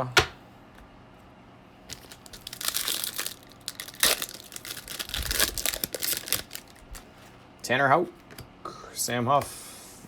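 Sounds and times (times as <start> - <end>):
foil wrapper crinkling and tearing: 1.9 - 7.3.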